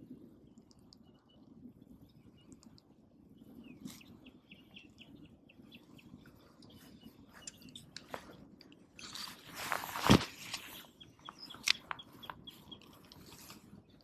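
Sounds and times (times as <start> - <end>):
low outdoor hum: 0.0 - 14.0
bird chirps: 3.4 - 8.4, 10.5 - 14.0.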